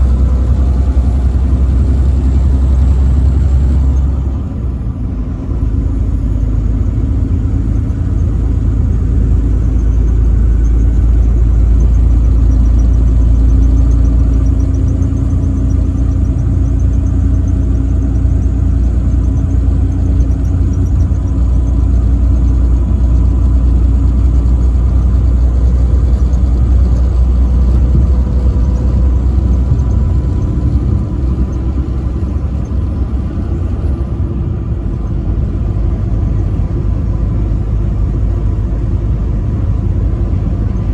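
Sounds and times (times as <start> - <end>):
road noise: 0.0 - 40.9
truck engine rumble: 0.0 - 40.9.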